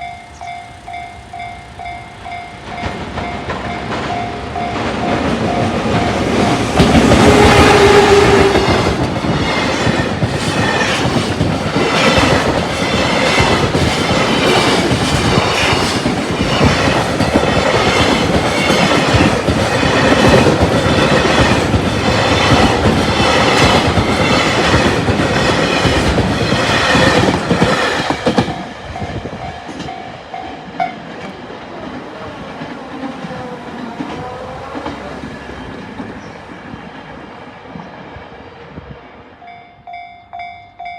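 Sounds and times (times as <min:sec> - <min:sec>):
level-crossing alarm bell ringing: 0:00.0 - 0:07.1, 0:39.4 - 0:40.9
freight train wheels clacking: 0:00.0 - 0:38.7
train rumble: 0:00.0 - 0:40.9.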